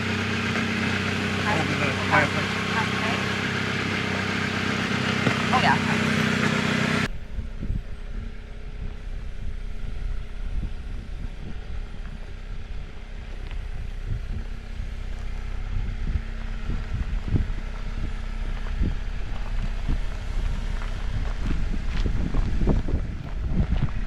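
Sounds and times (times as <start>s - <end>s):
vehicle engine running low: 0.0s - 24.0s
wind buffeting microphone: 7.0s - 24.0s.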